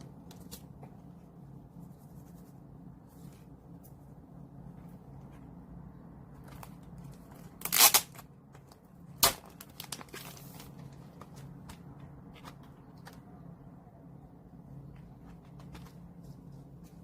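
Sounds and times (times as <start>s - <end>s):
packaging ripping: 7.5s - 8.3s, 9.2s - 10.8s
packaging crinkles: 9.2s - 11.4s.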